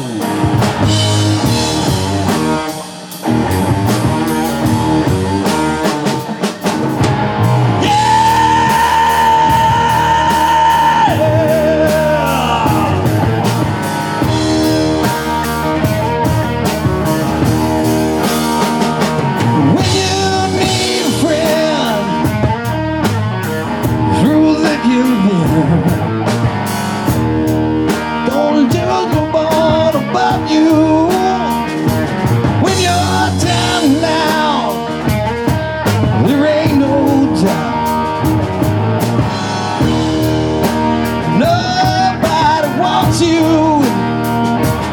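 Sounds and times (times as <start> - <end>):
drums: 0.0 - 44.9
electric guitar: 0.0 - 44.9
person singing: 7.6 - 15.2, 18.7 - 22.6, 24.0 - 26.0, 28.1 - 31.9, 32.5 - 38.3, 41.2 - 44.5.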